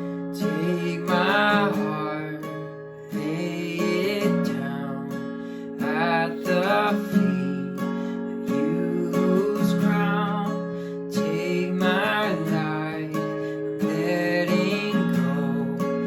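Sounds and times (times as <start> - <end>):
acoustic guitar strumming: 0.0 - 16.0
person singing: 0.4 - 2.5, 5.8 - 16.0.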